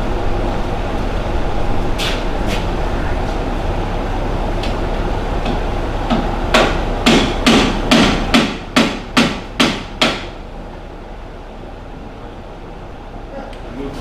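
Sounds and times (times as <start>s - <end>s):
hammer striking metal: 5.4s - 10.4s.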